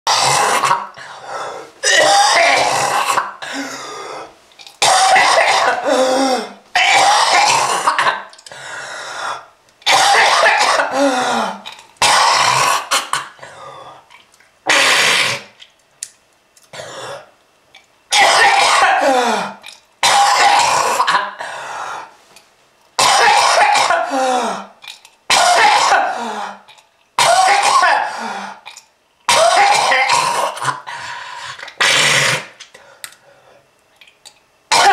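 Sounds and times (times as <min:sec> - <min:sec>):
person coughing loudly: 0:01.8 - 0:03.8, 0:04.8 - 0:08.3, 0:09.9 - 0:13.4, 0:18.1 - 0:21.4, 0:23.0 - 0:24.7, 0:25.3 - 0:26.6, 0:27.2 - 0:28.3, 0:29.3 - 0:30.9, 0:34.7 - 0:34.9.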